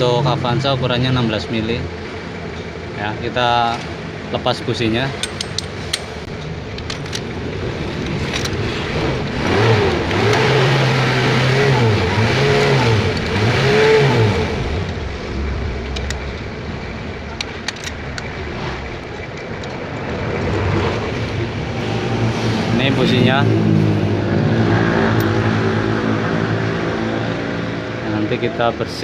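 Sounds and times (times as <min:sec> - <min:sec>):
sharp tool clicks: 0:05.1 - 0:07.3
vehicle engine revving: 0:07.7 - 0:28.4.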